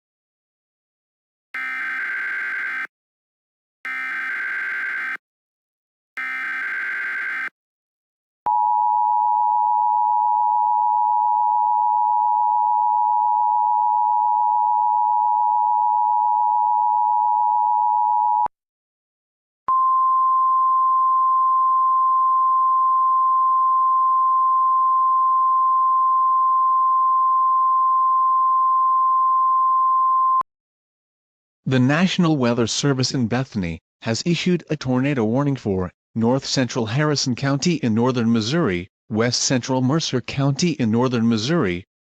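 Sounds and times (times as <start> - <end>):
single-pitch warning alarm tone: 1.6 - 2.9, 3.9 - 5.2, 6.2 - 7.5.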